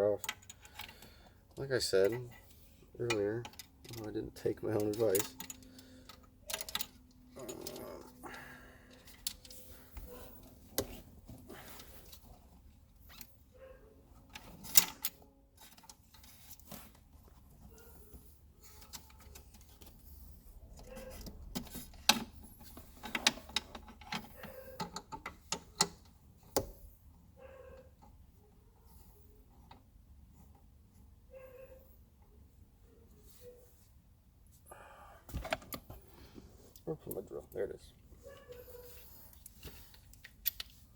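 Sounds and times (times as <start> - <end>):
plastic and metal parts clicking: 3.0 - 8.1, 20.8 - 26.8, 39.3 - 40.8.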